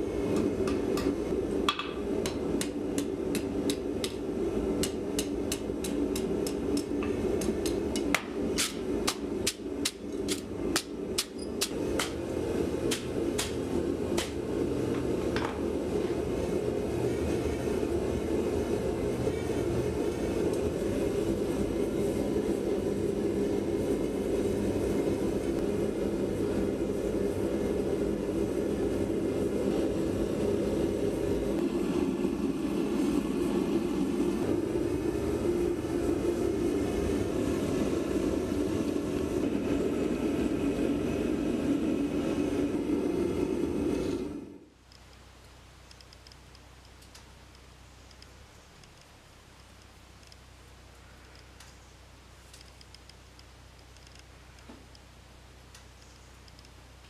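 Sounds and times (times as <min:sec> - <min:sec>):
forge rushing noise: 0:11.7 - 0:44.7.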